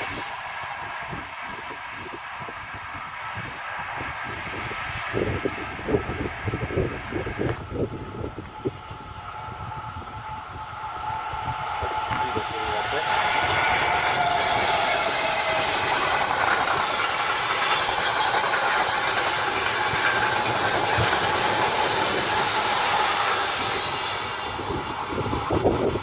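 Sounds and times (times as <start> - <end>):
train wheels clickety-clack: 7.2 - 26.0.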